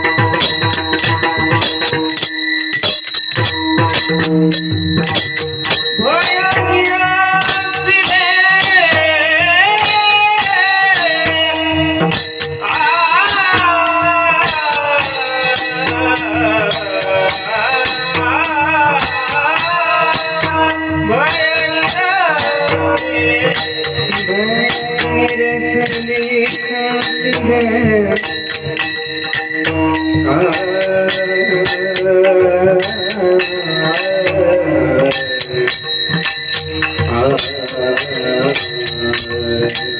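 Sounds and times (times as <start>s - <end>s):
drumming: 0.0s - 39.9s
metal hand cymbals ringing: 0.0s - 39.9s
devotional singing: 6.0s - 36.0s.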